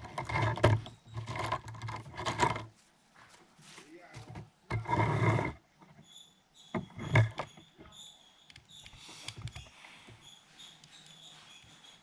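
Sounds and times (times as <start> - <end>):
small parts and tools clicking: 6.8 - 12.0.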